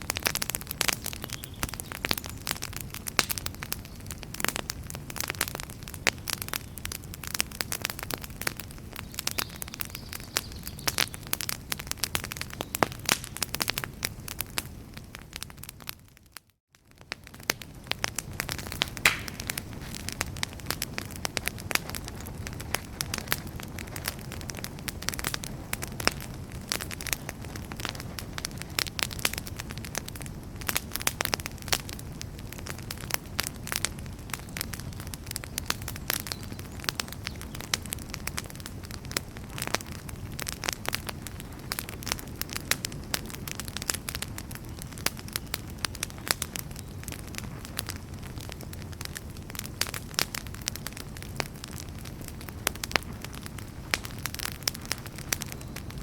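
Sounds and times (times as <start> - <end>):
campfire crackling and snapping: 0.0 - 56.0
low rush of flames: 0.0 - 56.0.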